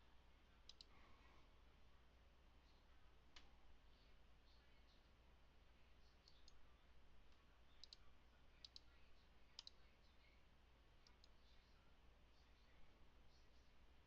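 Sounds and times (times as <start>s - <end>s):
low electrical hum: 0.0s - 14.0s
computer mouse clicks: 0.7s - 0.9s, 6.2s - 6.6s, 7.8s - 8.0s, 8.6s - 8.9s, 9.6s - 9.8s, 11.0s - 11.4s.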